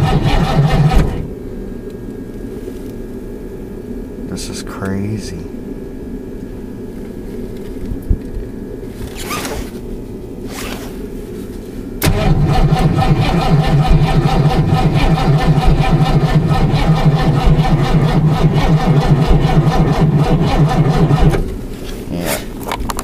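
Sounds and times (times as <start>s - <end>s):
engine cranking on starter: 0.0s - 1.3s, 12.0s - 21.5s.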